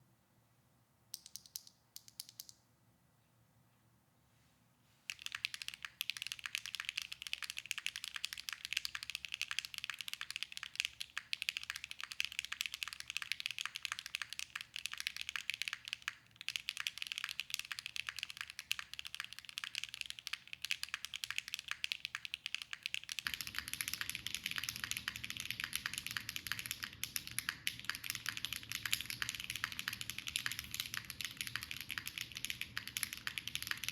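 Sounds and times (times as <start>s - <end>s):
low hiss: 0.0s - 33.9s
mechanical keyboard typing: 1.2s - 2.6s, 5.1s - 33.9s.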